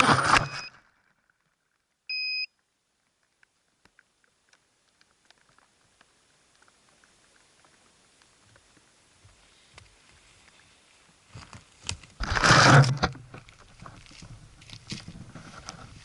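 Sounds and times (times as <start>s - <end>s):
short electronic beep: 0.0s - 0.8s, 2.1s - 2.5s
faint ticks: 2.5s - 12.0s.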